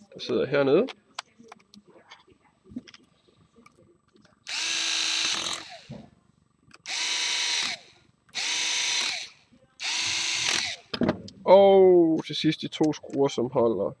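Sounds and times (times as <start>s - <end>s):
electric screwdriver running: 4.5s - 6.0s, 6.8s - 10.9s.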